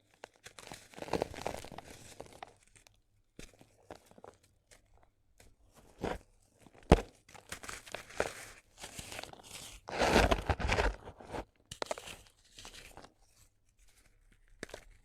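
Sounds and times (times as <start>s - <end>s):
dried cement crumbling: 9.2s - 12.0s.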